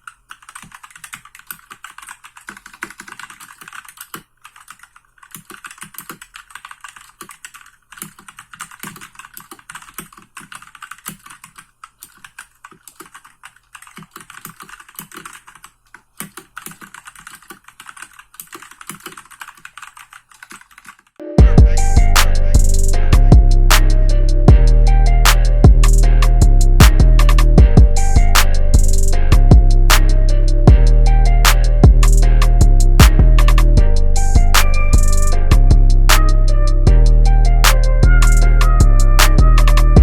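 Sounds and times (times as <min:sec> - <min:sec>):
mechanical keyboard typing: 0:00.0 - 0:21.2
loud music with drums: 0:21.4 - 0:40.0.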